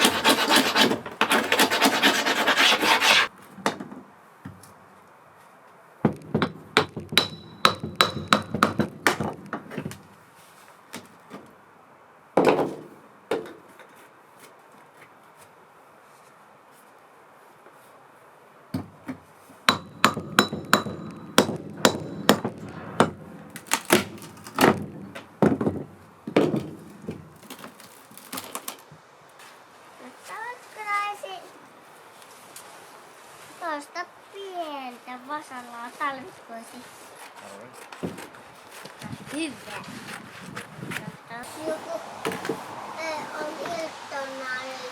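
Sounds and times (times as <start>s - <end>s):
hammer blows on wooden door: 19.7s - 23.3s.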